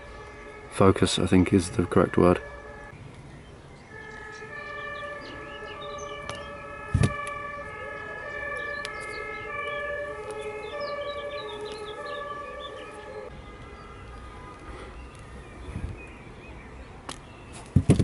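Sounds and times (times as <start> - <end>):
warbling siren tone: 0.0 - 2.9, 3.9 - 14.6
sirens wailing: 0.0 - 3.0, 3.7 - 16.8.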